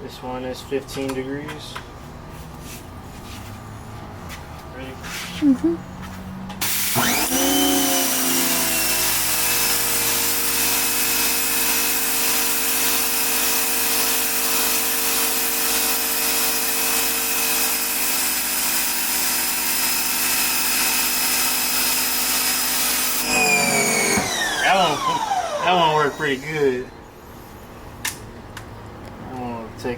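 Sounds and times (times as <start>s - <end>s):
water jet hissing on concrete: 6.6s - 7.0s
pressure washer motor running: 6.6s - 26.8s.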